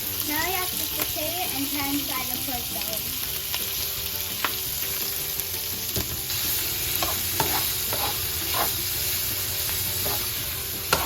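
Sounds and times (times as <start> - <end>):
meat sizzling in a frying pan: 0.0 - 11.0
utensil scraping a pan: 6.9 - 8.9, 9.9 - 11.0.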